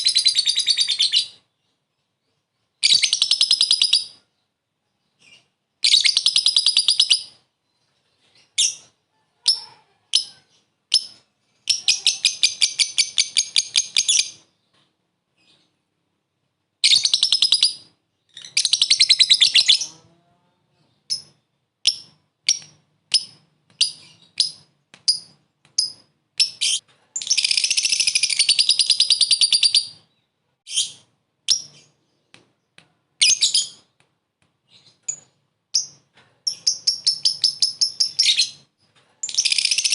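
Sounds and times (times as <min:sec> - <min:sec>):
sharp bird chirps: 0:02.8 - 0:04.3, 0:16.8 - 0:20.0, 0:21.0 - 0:32.3, 0:34.7 - 0:39.9.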